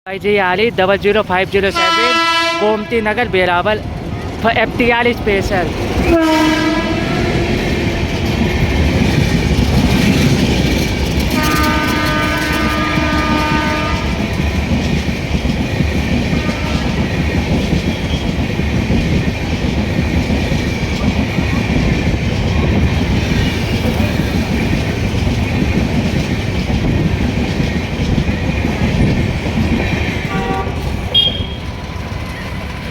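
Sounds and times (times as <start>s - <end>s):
train wheels clacking on rails: 0.6s - 32.9s
train horn: 1.7s - 3.0s, 6.1s - 8.0s, 11.3s - 14.4s, 16.3s - 17.0s, 30.3s - 31.7s.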